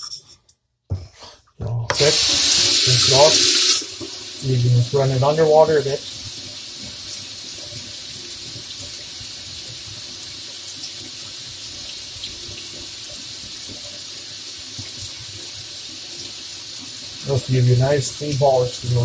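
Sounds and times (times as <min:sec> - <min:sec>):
knife rinsed under water: 0:01.9 - 0:06.1
tap water running: 0:01.9 - 0:19.0.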